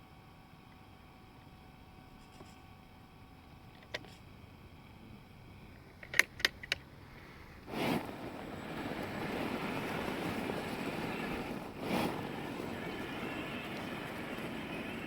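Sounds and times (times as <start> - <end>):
robot rover motors rumbling: 7.0 - 15.0.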